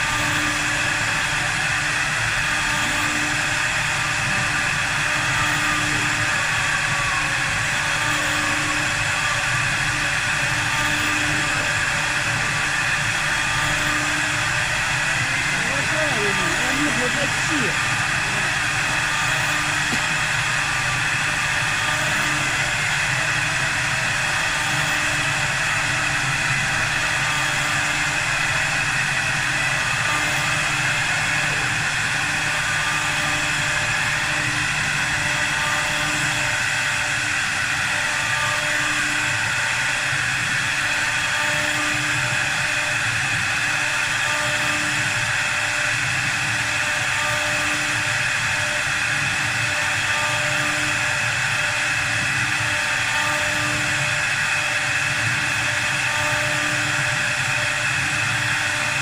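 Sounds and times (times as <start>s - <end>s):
wood lathe running: 9.1s - 42.8s.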